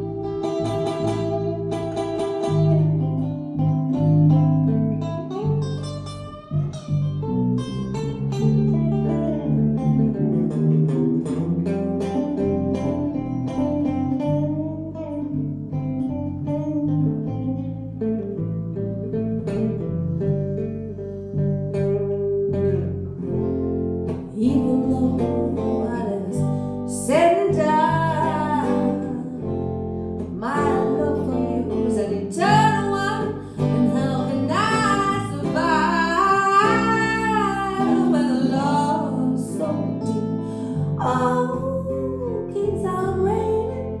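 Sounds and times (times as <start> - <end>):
blues guitar lead line: 0.0 - 44.0.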